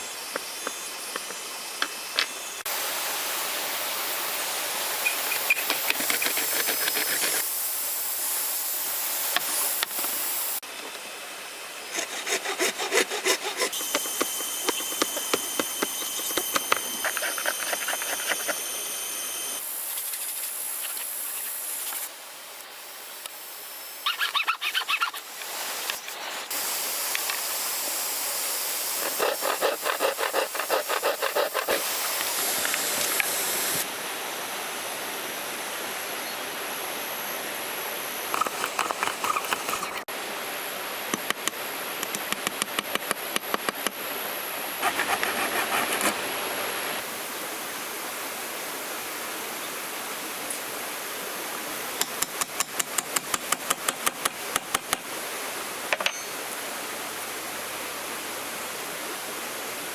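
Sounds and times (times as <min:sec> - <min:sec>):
steady hiss: 0:00.0 - 0:12.2, 0:13.7 - 0:59.9
hand tool working bamboo: 0:12.0 - 0:18.6, 0:29.0 - 0:31.9, 0:44.8 - 0:46.4.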